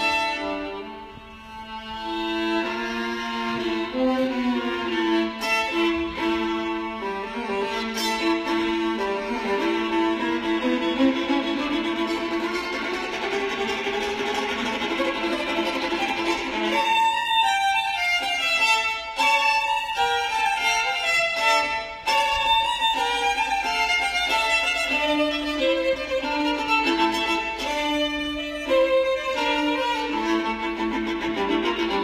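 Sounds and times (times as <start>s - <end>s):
solo violin melody: 0.0s - 32.0s.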